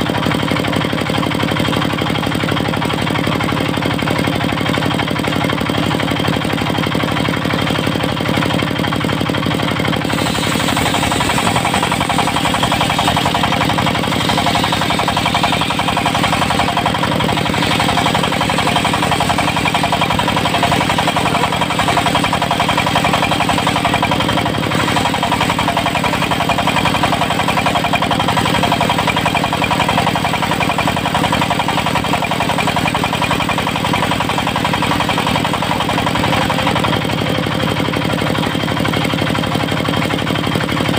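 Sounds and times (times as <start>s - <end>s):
diesel engine running: 0.0s - 40.9s
high-pitched saw blade cutting wood: 10.0s - 27.8s.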